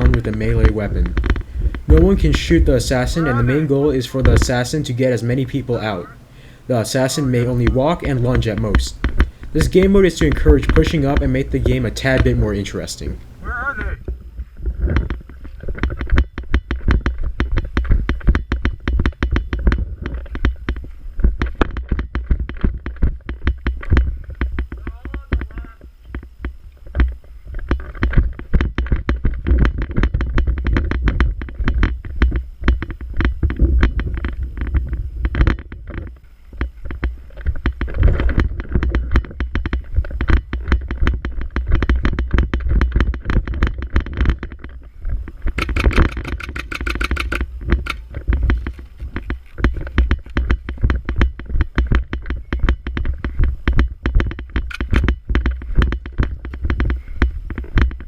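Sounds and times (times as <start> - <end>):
low handling rumble: 0.0 - 18.9
clicks and rattles: 0.0 - 58.0.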